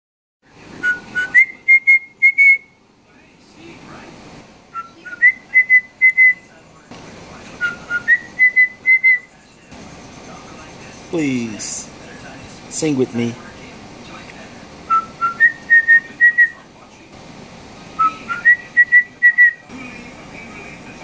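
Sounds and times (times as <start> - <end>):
whistled tune: 0.8 - 2.7, 4.8 - 6.4, 7.6 - 9.3, 14.9 - 16.6, 18.0 - 19.6.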